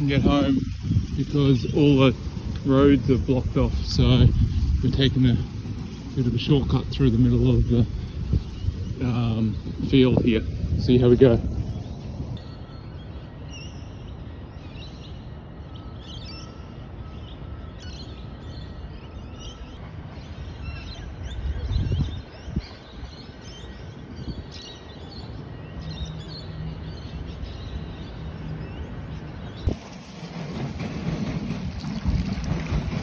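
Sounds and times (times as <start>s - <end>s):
steady low rumble: 0.0s - 12.4s
small birds chirping: 0.0s - 31.4s.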